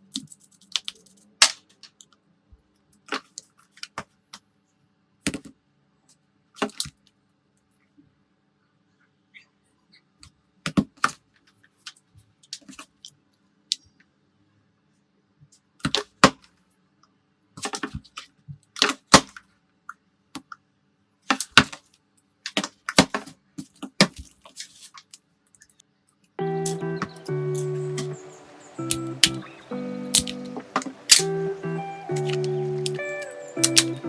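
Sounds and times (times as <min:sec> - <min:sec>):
tools clicking and tapping: 0:26.6 - 0:29.4, 0:30.0 - 0:31.4, 0:32.1 - 0:34.0.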